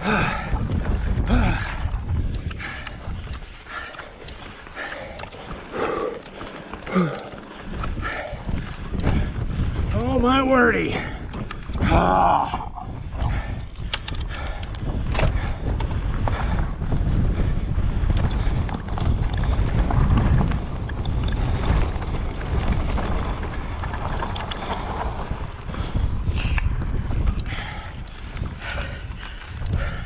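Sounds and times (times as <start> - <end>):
wind buffeting microphone: 0.0 - 30.0
sharp clicks: 13.6 - 16.0.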